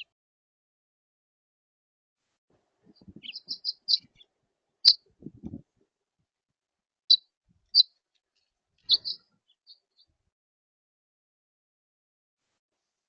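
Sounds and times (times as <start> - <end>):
songbird chirping: 2.8 - 5.6, 7.1 - 10.2.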